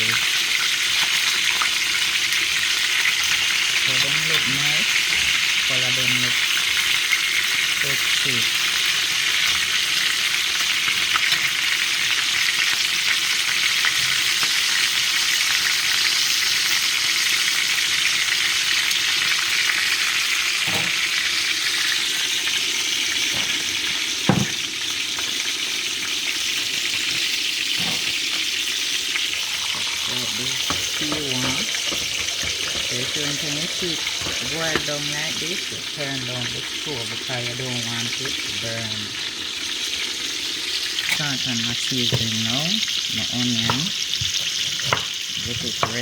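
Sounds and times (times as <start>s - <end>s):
chicken sizzling in hot oil: 0.0s - 46.0s.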